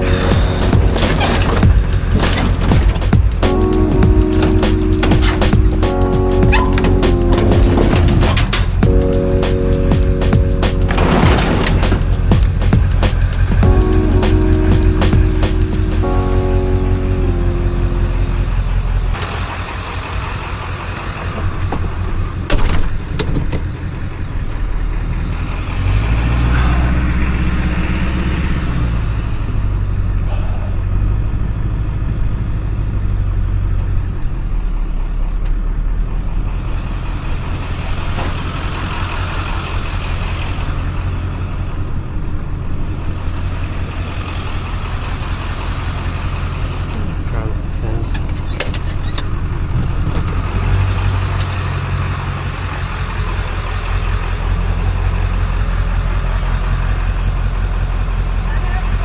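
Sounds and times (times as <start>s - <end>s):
vehicle engine and road noise: 0.0s - 59.0s.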